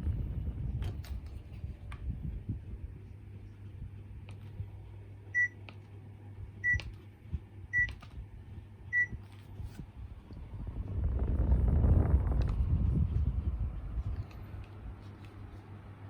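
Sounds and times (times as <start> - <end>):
low steady hum: 0.0 - 16.0
air conditioner beeping: 3.8 - 11.2.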